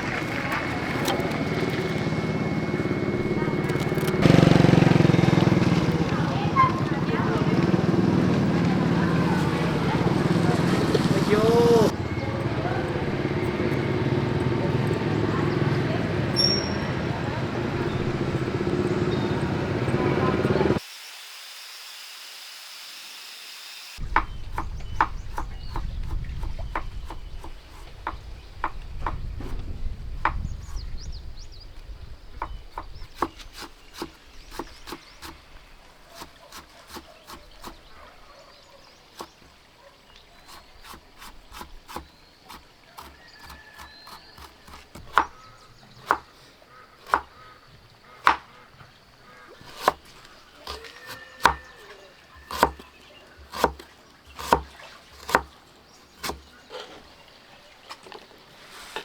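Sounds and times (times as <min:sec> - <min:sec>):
faint high chirps: 0:11.8 - 0:20.6
sharp wooden knocks: 0:48.2 - 0:48.5.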